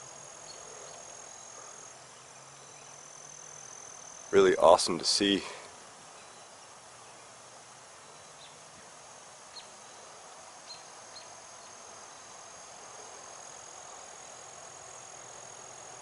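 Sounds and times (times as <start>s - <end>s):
bees humming: 0.0s - 5.6s.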